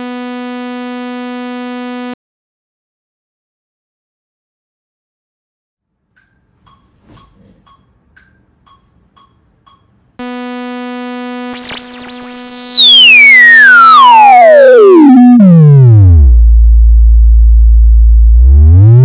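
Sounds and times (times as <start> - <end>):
synthesizer sawtooth note: 10.2 - 19.0
whistling resonant filter sweep: 11.5 - 15.6.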